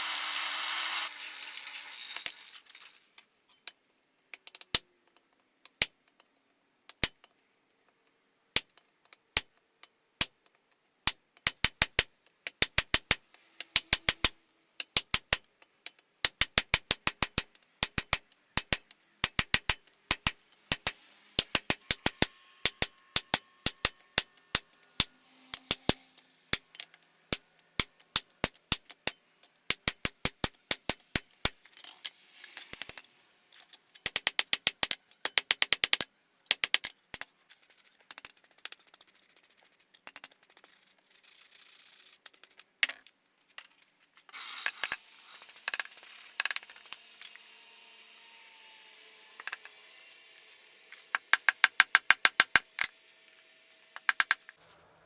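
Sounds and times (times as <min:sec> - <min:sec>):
hissing rubbing noise: 0:48.6 - 0:51.2.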